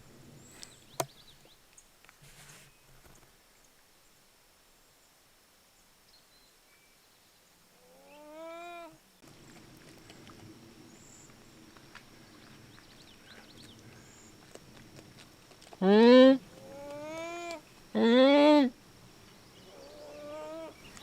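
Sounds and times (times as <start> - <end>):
faint ticks and rustles: 0.4 - 4.3, 9.2 - 15.8, 20.7 - 21.0
beaver whining call: 15.8 - 18.7, 19.6 - 21.0.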